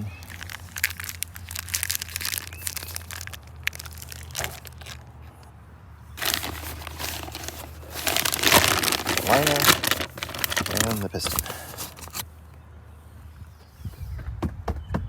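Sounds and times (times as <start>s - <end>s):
packaging crinkling and rustling: 0.0s - 5.2s, 6.2s - 12.2s.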